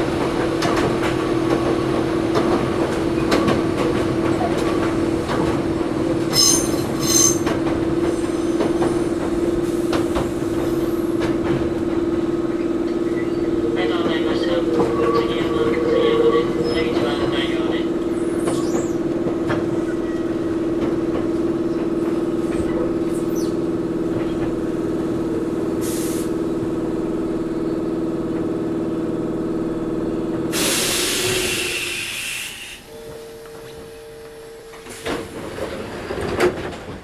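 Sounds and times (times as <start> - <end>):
train motor hum over rumble: 0.0 - 37.0
compressed air hiss: 30.6 - 32.8.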